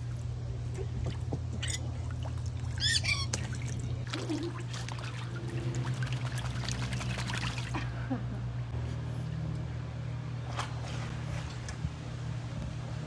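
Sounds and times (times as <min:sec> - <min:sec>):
steady low hum: 0:00.0 - 0:13.0
water splashing and trickling: 0:00.8 - 0:07.9.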